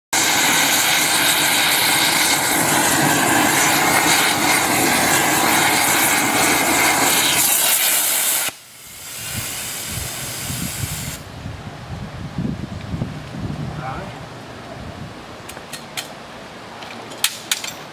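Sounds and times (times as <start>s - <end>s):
torch roaring hiss: 0.2s - 11.3s.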